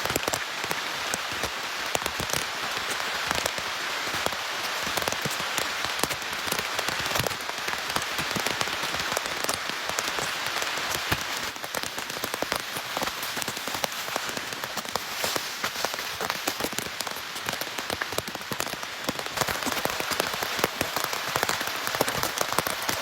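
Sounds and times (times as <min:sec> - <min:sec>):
rain drops striking: 0:00.0 - 0:23.0.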